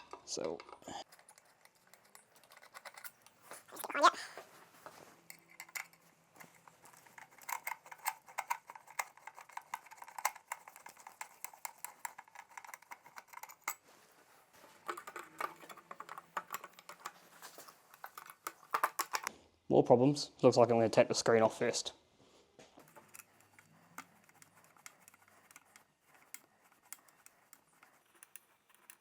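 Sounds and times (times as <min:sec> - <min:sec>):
tool clicks and metallic clinks: 0:14.8 - 0:19.3.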